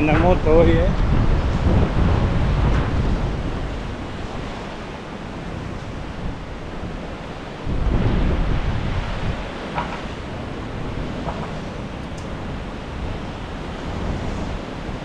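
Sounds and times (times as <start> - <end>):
storm wind buffeting microphone: 0.0 - 15.0.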